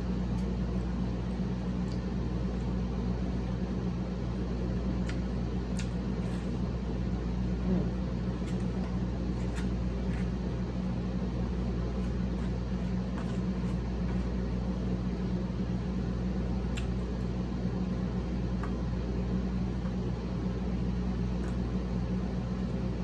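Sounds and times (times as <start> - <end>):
steady mechanical hum: 0.0 - 23.0
faint clicks of eating: 0.3 - 2.8, 5.0 - 6.6, 16.7 - 17.2, 18.5 - 18.8, 21.4 - 21.7.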